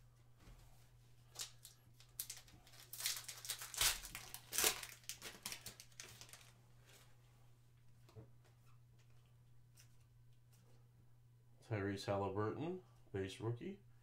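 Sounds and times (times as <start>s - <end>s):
foil wrapper crinkling and tearing: 1.3s - 6.6s.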